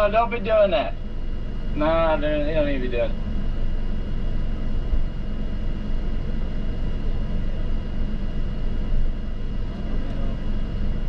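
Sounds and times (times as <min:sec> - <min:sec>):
faint high whine: 0:00.0 - 0:11.0
vehicle low rumble: 0:00.0 - 0:11.0.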